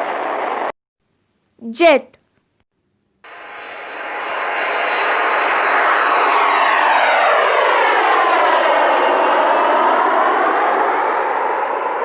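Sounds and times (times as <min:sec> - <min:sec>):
jet aircraft flying past: 0:00.0 - 0:00.7, 0:03.2 - 0:12.0.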